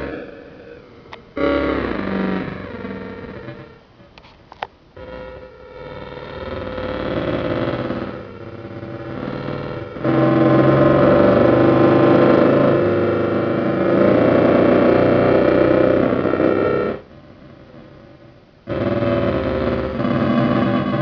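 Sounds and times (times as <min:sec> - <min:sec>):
distorted growling electronic drone: 0:00.0 - 0:21.0.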